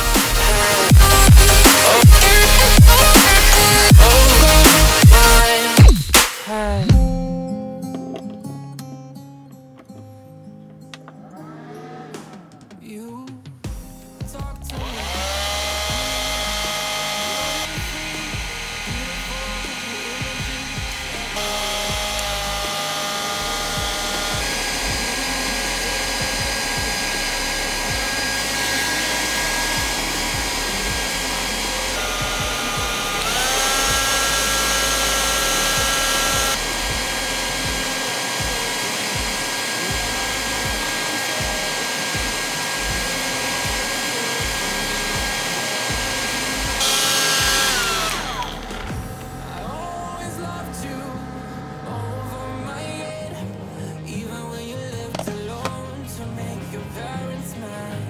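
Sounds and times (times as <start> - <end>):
hair dryer whirring: 0.0 - 6.5, 14.7 - 50.0.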